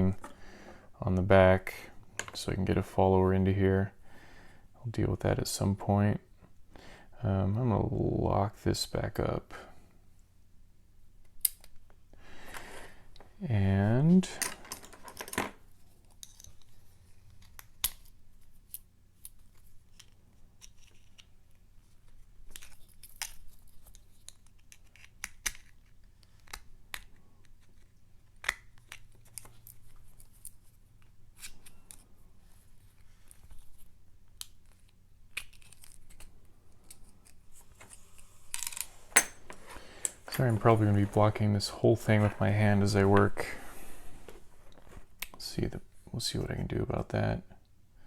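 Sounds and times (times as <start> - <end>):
lock clicks and scrapes: 34.7 - 41.2.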